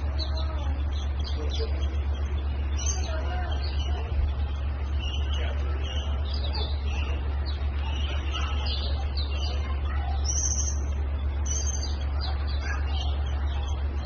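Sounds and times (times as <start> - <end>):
small birds chirping: 0.0 - 14.0
steady low hum: 0.0 - 14.0.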